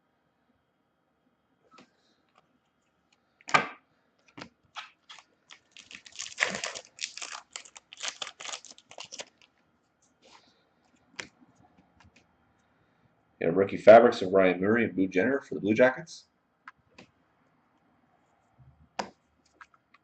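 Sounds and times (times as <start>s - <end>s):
foil wrapper crackling: 4.7s - 9.6s
foil wrapper tearing: 4.8s - 9.6s.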